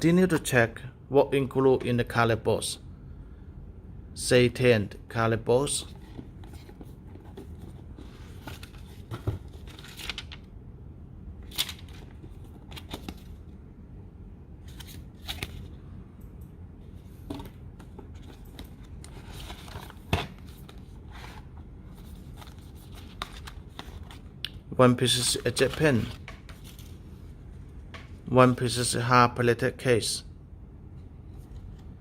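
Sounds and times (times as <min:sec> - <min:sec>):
cardboard rustling: 0:05.9 - 0:10.4.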